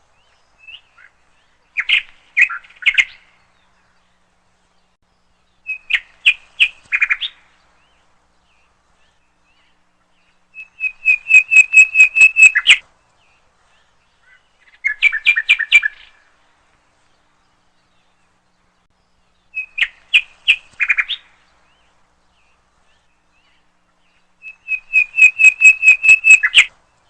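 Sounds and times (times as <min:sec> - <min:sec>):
songbird trilling: 0:05.6 - 0:07.9, 0:08.5 - 0:12.8, 0:14.2 - 0:16.2, 0:19.4 - 0:21.8, 0:22.4 - 0:26.7.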